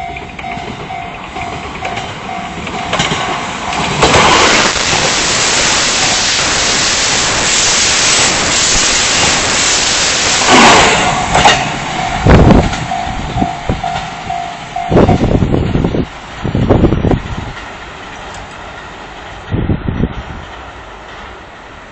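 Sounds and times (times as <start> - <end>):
crossing warning bell ringing: 0.0 - 16.9
train rushing past: 0.0 - 21.9.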